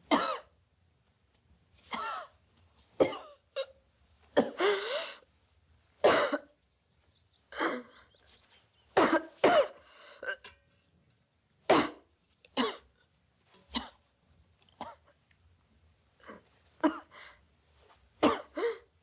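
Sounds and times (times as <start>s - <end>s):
woman coughing: 0.1s - 0.5s, 3.0s - 3.8s, 4.4s - 4.8s, 6.0s - 6.6s, 9.0s - 10.5s, 11.7s - 12.9s, 16.8s - 17.2s, 18.2s - 18.9s.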